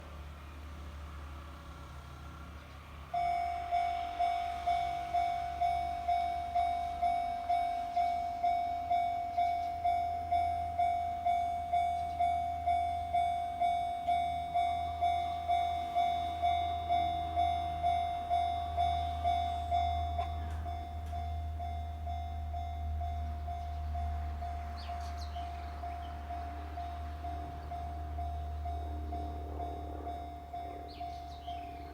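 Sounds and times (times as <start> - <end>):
level crossing warning bell: 3.0 - 31.9.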